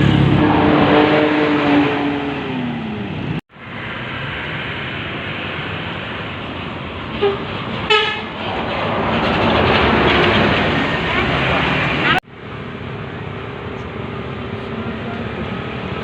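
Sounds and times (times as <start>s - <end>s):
traffic passing: 0.0s - 16.0s
vehicle horn sliding down: 0.4s - 2.2s, 7.2s - 8.3s
short horn toot: 7.2s - 8.3s.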